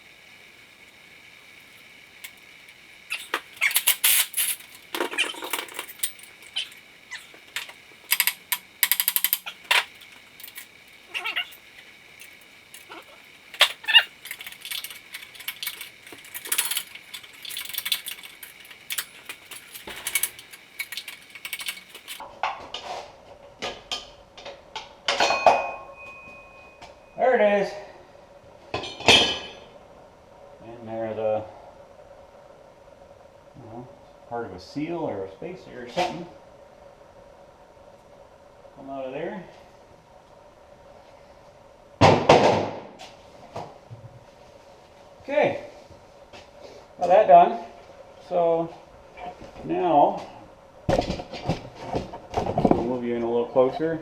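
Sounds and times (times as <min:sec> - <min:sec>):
ratchet clicking: 0:00.0 - 0:22.2
metal-on-metal squeaking: 0:03.0 - 0:22.2.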